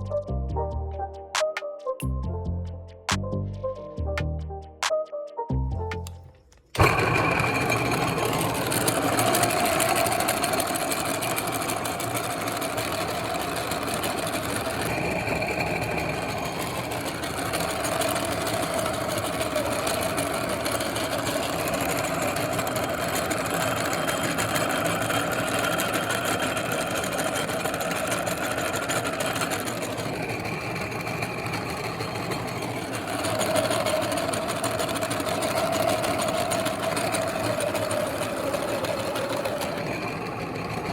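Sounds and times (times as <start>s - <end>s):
electric meat grinder running: 6.8s - 40.9s.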